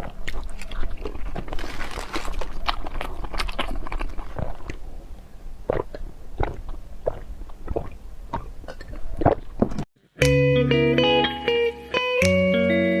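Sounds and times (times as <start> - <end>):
wet squishy chewing: 0.0 - 9.9.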